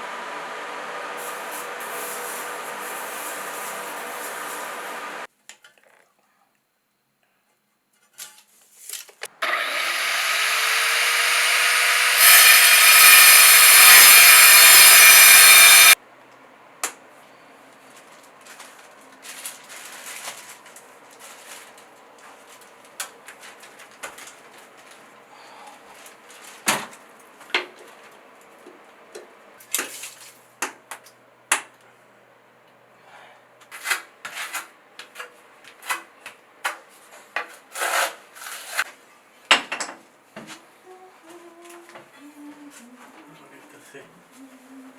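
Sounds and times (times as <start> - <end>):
power tool whining: 0.0 - 5.3, 9.3 - 16.0.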